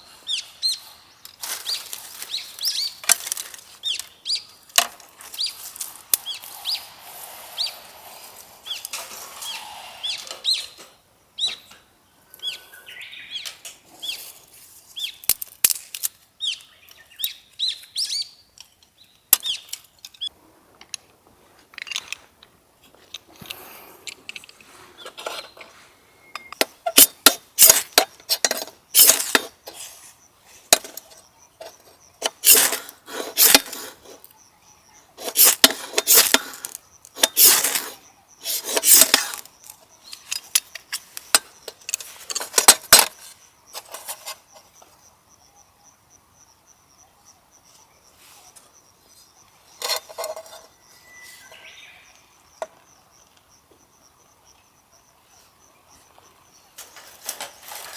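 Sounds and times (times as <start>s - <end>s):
faint high insect trill: 36.2s - 57.9s.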